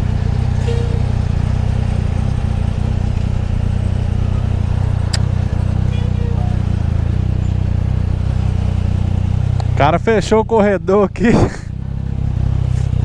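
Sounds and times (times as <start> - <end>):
motorcycle engine running low: 0.0 - 10.9.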